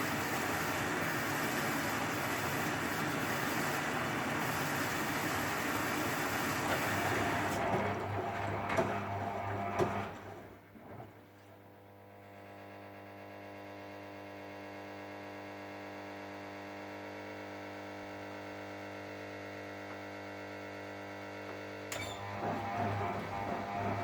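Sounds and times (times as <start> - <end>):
washing machine humming: 0.0 - 12.2, 21.9 - 24.0.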